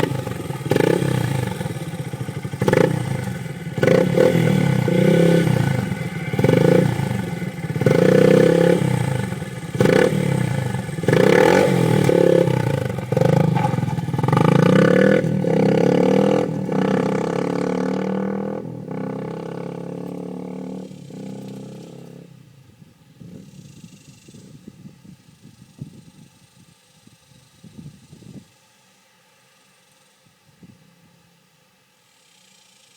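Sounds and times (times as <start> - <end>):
motorcycle engine revving: 0.0 - 22.6.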